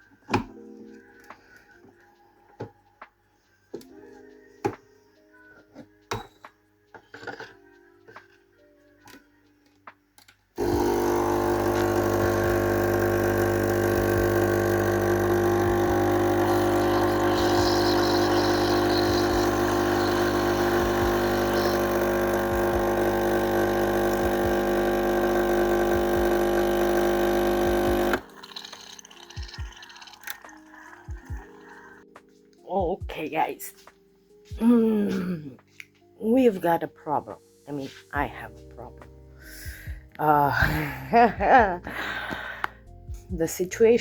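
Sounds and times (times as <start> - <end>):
loud machine hum: 10.6 - 28.2.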